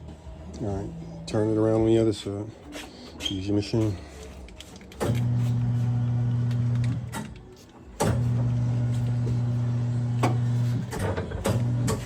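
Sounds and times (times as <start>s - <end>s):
electric motor humming: 5.0s - 7.2s, 8.0s - 12.0s.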